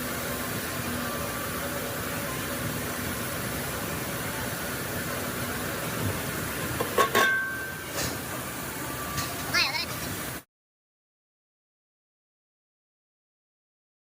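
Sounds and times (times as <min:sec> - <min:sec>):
factory machinery hum: 0:00.0 - 0:10.4.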